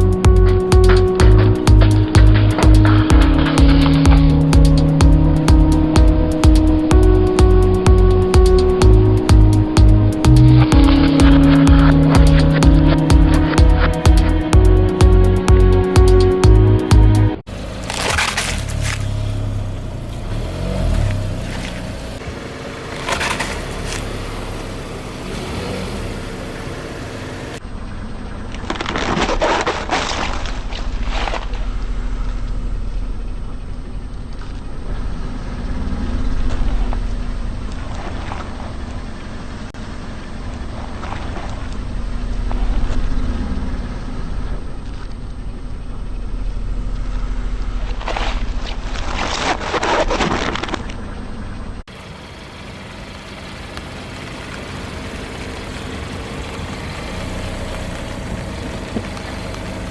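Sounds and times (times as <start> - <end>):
car engine running low: 0.0 - 59.9
tyres crunching objects: 17.5 - 22.2, 28.5 - 31.9, 47.5 - 51.4.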